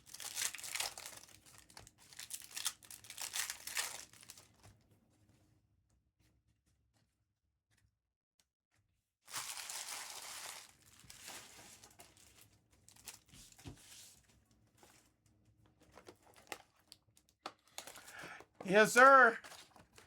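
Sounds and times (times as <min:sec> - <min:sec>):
card packaging tearing: 0:00.0 - 0:04.4, 0:09.3 - 0:11.6, 0:17.7 - 0:20.0
wrappers crinkling: 0:00.0 - 0:04.7, 0:09.3 - 0:13.7, 0:15.9 - 0:20.0.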